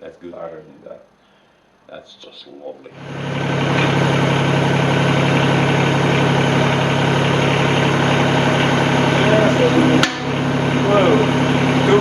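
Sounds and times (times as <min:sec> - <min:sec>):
tractor diesel engine running: 0:03.0 - 0:12.0.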